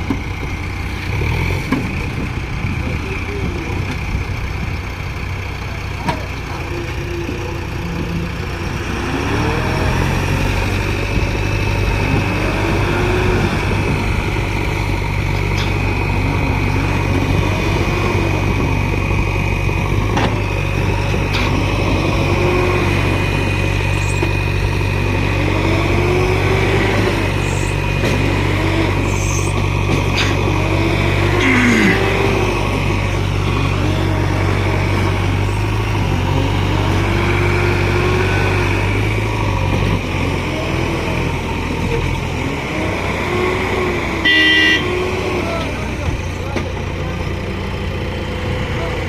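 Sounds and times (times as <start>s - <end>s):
heavy diesel engine running: 0.0s - 49.0s.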